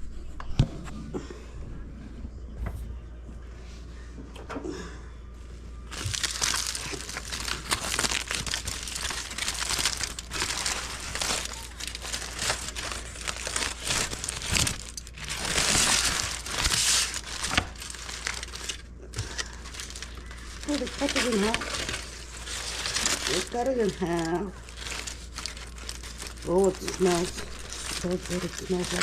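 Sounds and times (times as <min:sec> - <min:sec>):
wrapping paper crinkling: 0:05.8 - 0:29.0.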